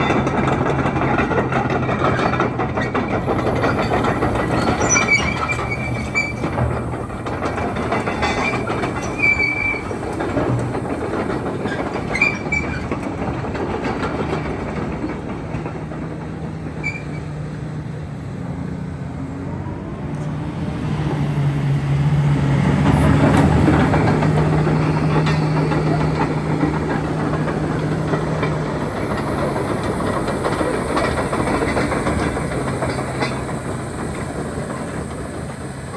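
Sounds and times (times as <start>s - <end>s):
metal clanking: 0.0s - 18.3s, 22.8s - 35.9s
excavator diesel engine running: 0.0s - 35.9s
short high squeals: 3.6s - 6.9s, 7.6s - 10.2s.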